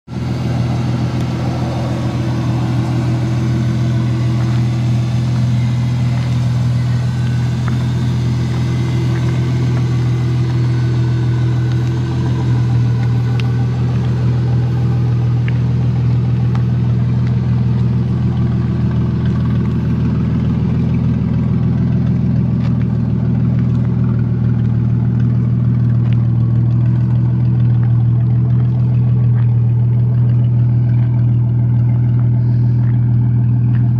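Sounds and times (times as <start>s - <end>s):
car engine idling: 0.0s - 33.9s.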